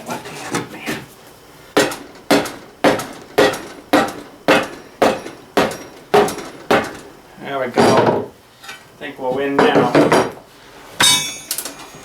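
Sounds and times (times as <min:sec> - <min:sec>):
hammer blows: 0:01.8 - 0:07.1.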